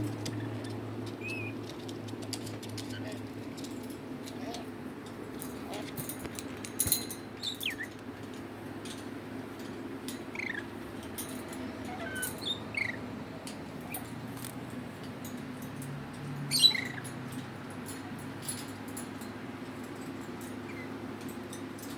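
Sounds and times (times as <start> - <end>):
steady low hum: 0.0 - 21.9
parrot clicks and squeaks: 10.1 - 10.7, 11.9 - 13.0
cat-like bird mews: 11.9 - 12.9.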